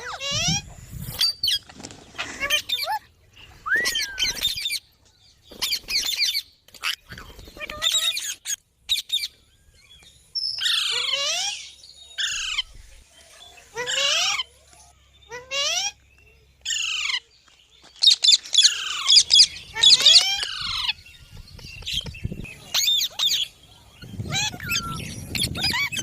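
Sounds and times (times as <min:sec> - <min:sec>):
parrot squawking: 0:10.6 - 0:12.6.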